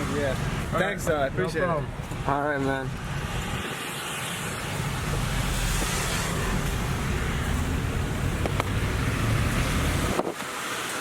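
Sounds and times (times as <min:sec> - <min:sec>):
rushing noise: 0:02.9 - 0:10.2.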